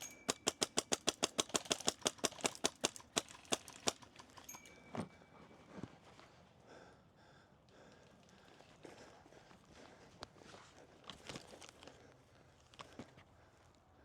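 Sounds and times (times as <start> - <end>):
airsoft rifle rapid fire: 0.0 - 4.3.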